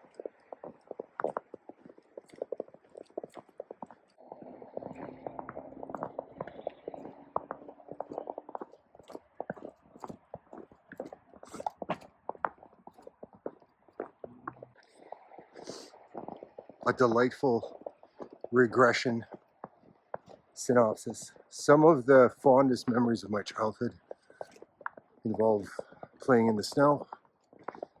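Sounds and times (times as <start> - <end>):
boots crunching through snow: 4.7 - 14.3.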